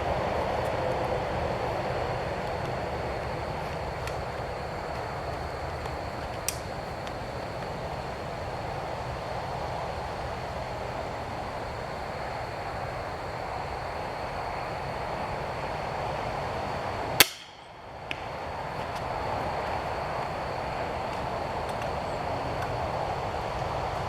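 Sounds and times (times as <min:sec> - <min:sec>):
outdoor background rumble: 0:00.0 - 0:24.0
crossbow firing: 0:17.2 - 0:17.7.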